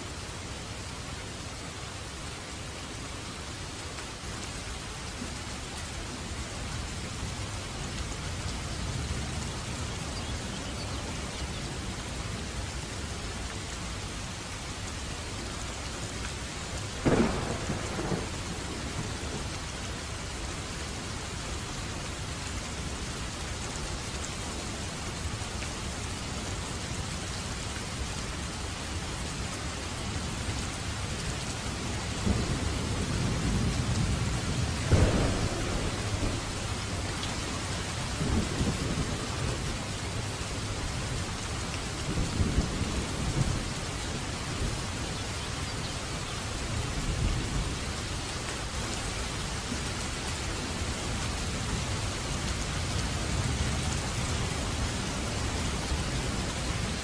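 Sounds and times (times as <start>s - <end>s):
heavy rain falling: 0.0s - 57.0s
sharp thunderclap: 17.0s - 19.4s, 34.8s - 36.6s
low thunder rumble: 17.0s - 19.7s, 31.8s - 41.1s, 42.0s - 45.0s.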